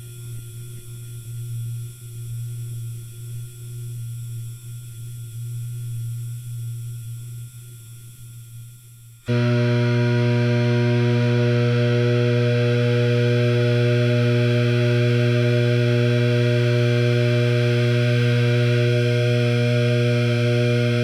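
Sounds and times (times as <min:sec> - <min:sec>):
instrument washer electrical hum: 0:09.3 - 0:21.0.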